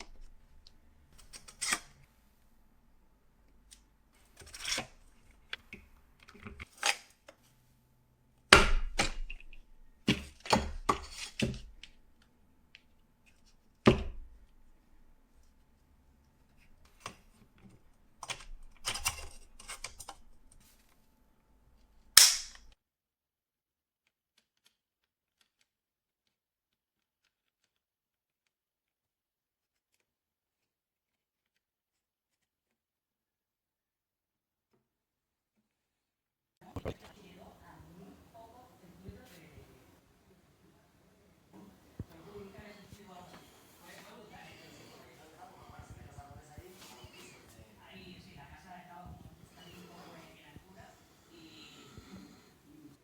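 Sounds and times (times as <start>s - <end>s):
loud plastic snaps: 22.1s - 22.8s.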